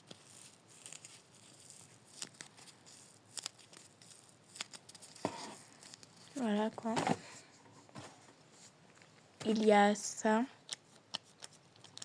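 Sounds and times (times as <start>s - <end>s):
paper rustling: 0.1s - 8.7s.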